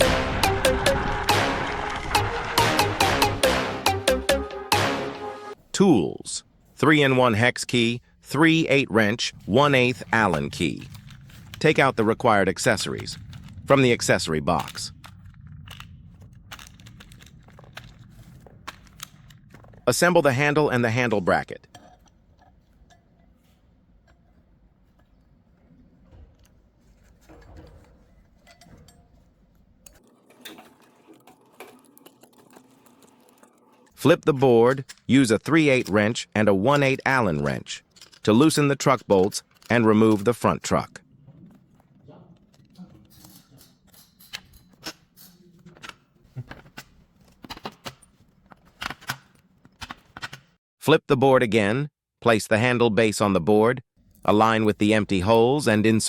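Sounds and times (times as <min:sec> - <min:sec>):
metal parts clattering: 0:09.3 - 0:50.5, 0:54.0 - 0:56.0.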